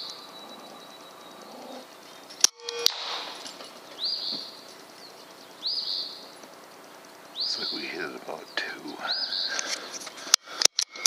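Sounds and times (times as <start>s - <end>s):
bird chirping: 0.0s - 11.0s
sharp click: 2.3s - 3.8s
air rifle shot: 2.5s - 3.6s.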